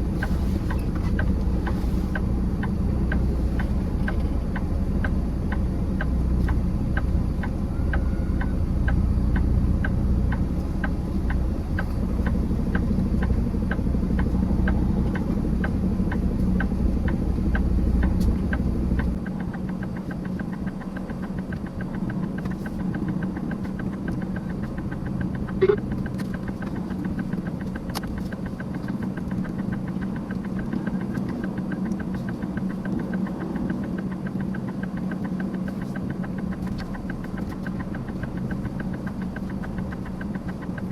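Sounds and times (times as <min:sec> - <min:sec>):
diesel truck engine idling: 0:00.0 - 0:40.9
steady ticking: 0:00.0 - 0:40.9
short sharp blip: 0:25.6 - 0:25.8.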